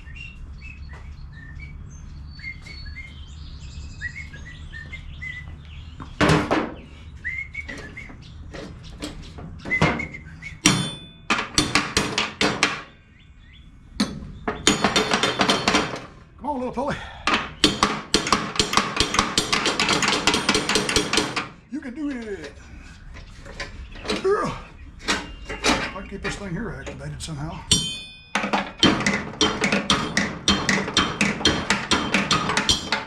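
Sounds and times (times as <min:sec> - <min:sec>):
birds chirping: 0:00.0 - 0:33.0
hammer striking metal: 0:10.6 - 0:13.0, 0:14.0 - 0:16.1, 0:17.3 - 0:21.5, 0:27.7 - 0:33.0.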